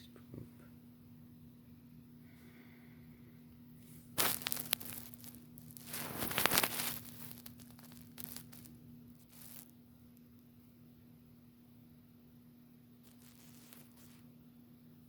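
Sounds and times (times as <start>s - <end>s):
steady low hum: 0.0s - 15.0s
rustling crinkling: 3.8s - 9.7s, 13.0s - 14.2s.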